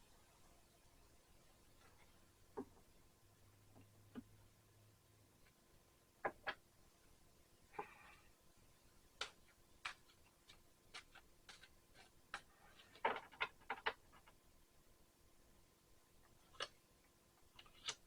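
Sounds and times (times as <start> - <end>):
cards clicking and tapping: 9.2 - 14.4, 16.5 - 16.8, 17.6 - 18.0.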